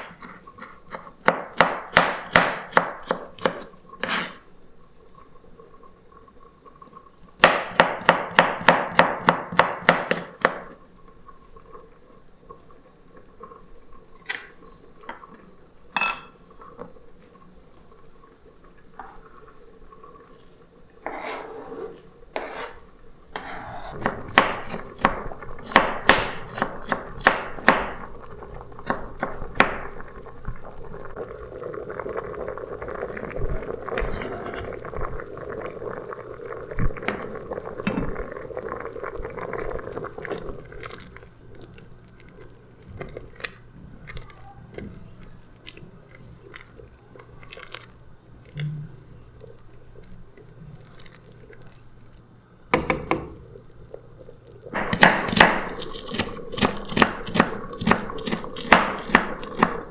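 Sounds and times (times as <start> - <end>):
utensils scraping and rustling: 20.4 - 24.0, 54.8 - 59.8
kitchen utensils knocking and clattering: 54.8 - 59.8.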